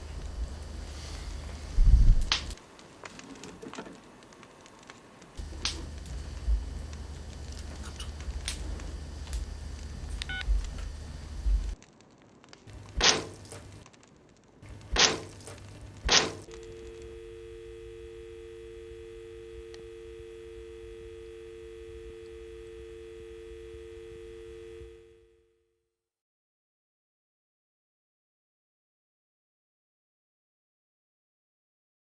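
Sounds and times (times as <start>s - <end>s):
low hum: 0.0s - 2.6s, 5.4s - 11.8s, 14.6s - 25.6s
clicks and rustle: 2.2s - 10.9s, 11.7s - 17.0s
two-note telephone dial tone: 16.5s - 25.5s.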